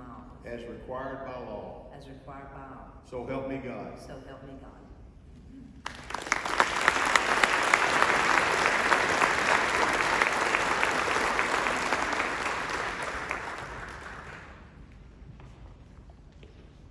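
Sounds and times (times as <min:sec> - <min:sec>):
audience applauding: 0:05.8 - 0:14.8.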